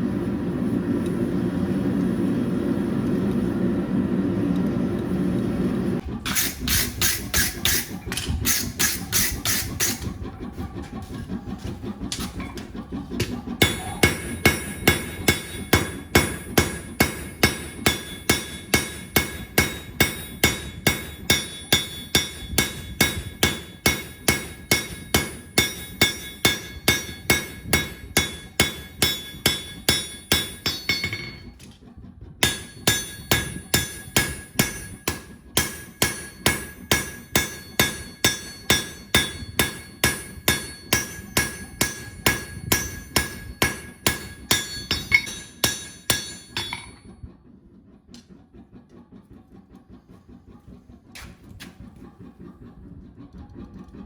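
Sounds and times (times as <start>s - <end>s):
hammer on anvil ringing: 13.6s - 31.5s, 32.4s - 47.0s.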